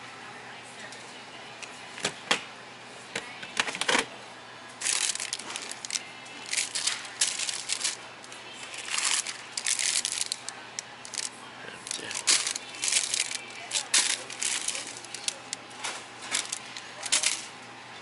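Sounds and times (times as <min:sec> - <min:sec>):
high-pitched crinkling rustle: 0:04.8 - 0:17.5.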